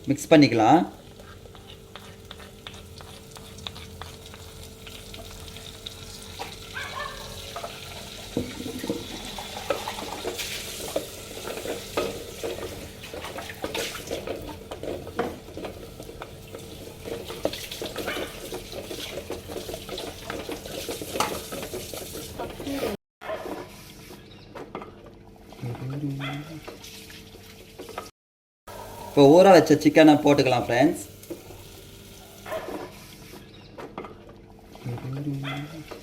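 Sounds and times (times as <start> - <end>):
spices sizzling in a pot: 0.0 - 23.0, 28.7 - 33.3
spoon scraping and knocking pot: 1.0 - 6.6, 7.2 - 22.8.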